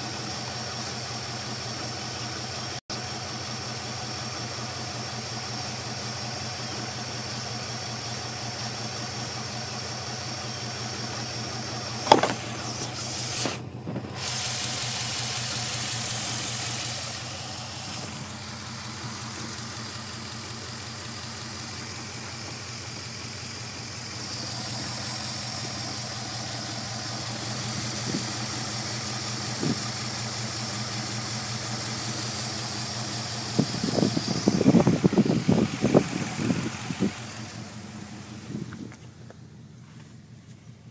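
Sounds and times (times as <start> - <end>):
car engine idling rough: 0.0 - 40.9
irregular thumps: 12.0 - 14.1
sharp engine knock: 12.1 - 12.6.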